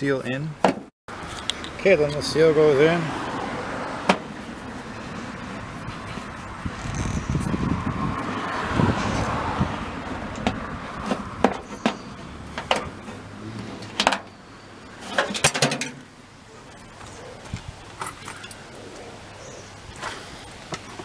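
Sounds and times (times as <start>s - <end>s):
sharp clicks and knocks of parts: 15.0s - 16.0s.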